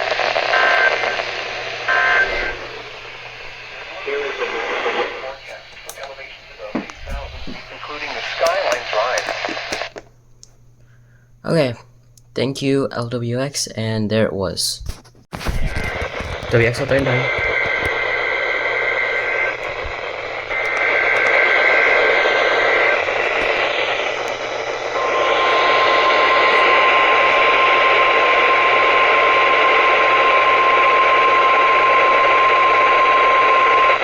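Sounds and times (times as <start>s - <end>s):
steady warning alarm tone: 0.0s - 8.2s
radio static hiss: 0.0s - 10.1s, 14.8s - 34.0s.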